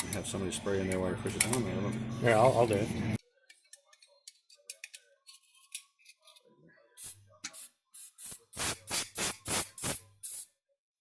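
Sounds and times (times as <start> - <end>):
aerosol spray hissing bursts: 7.6 - 10.5.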